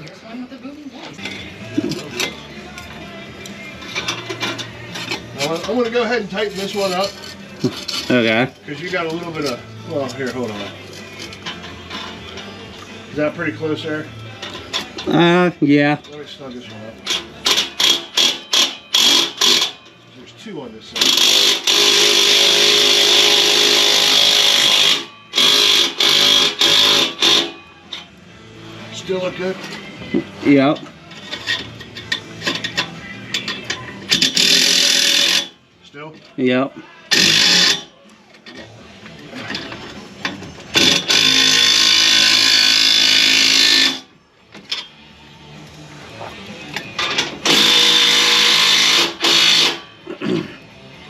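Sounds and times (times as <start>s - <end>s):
faint radio music: 0.0s - 51.0s
impact wrench tightening bolts: 17.1s - 19.8s, 21.0s - 27.6s, 31.2s - 35.5s, 37.1s - 38.7s, 40.8s - 44.0s, 47.0s - 49.8s
handheld power tool running: 17.5s - 19.8s, 21.0s - 27.6s, 34.1s - 35.5s, 37.1s - 37.9s, 40.8s - 44.0s, 47.4s - 49.8s.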